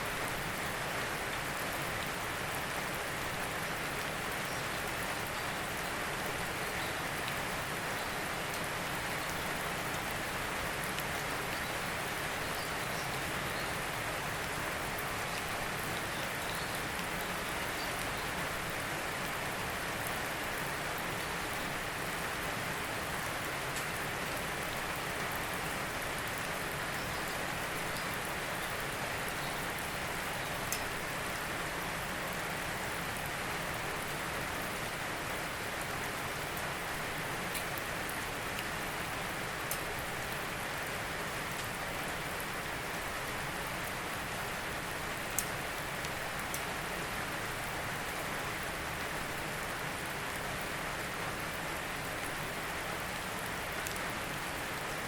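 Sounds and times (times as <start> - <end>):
steady rain hiss: 0.0 - 55.0
single raindrop ticks: 30.7 - 30.9, 45.3 - 46.7.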